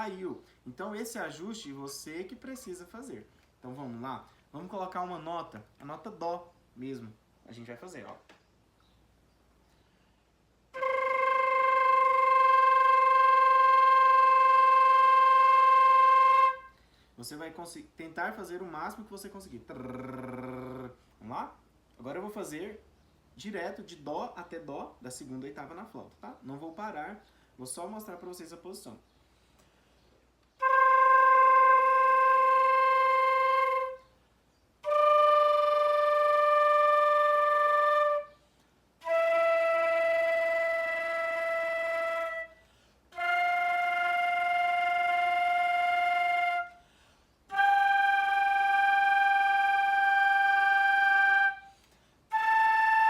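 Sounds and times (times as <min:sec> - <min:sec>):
flute flutter-tongued sustained note: 0:10.8 - 0:16.7, 0:30.6 - 0:34.1, 0:34.8 - 0:38.4, 0:39.0 - 0:42.6, 0:43.2 - 0:46.8, 0:47.5 - 0:51.7, 0:52.3 - 0:53.0.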